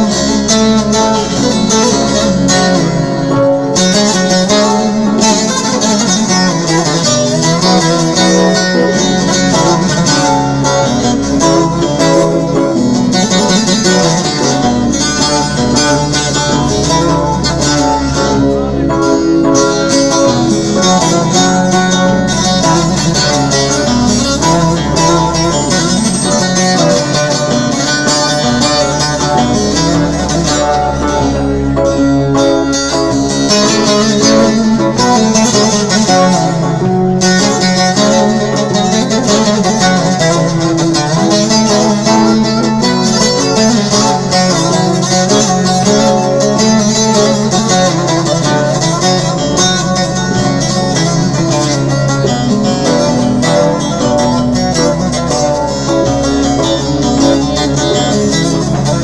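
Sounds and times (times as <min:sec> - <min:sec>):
bowed strings: 0:00.0 - 0:59.0
plucked string instruments: 0:00.0 - 0:59.0
steady bass: 0:00.0 - 0:59.0.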